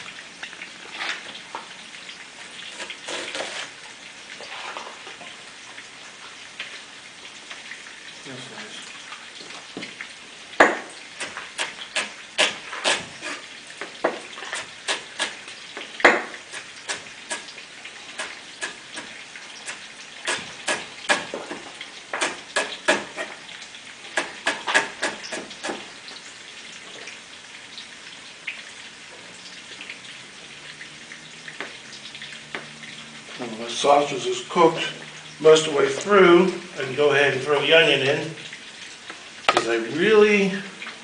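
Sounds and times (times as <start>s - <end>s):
utensil scraping a pan: 2.6s - 3.8s, 11.2s - 23.5s, 24.1s - 26.0s.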